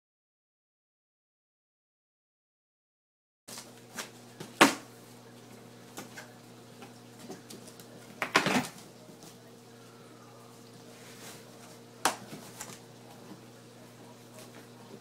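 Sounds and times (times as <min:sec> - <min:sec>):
steady low hum: 0:03.5 - 0:15.0.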